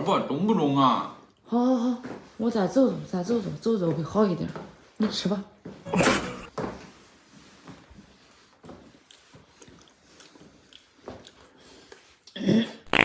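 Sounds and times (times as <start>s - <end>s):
person chewing: 5.9s - 6.5s, 9.0s - 12.4s.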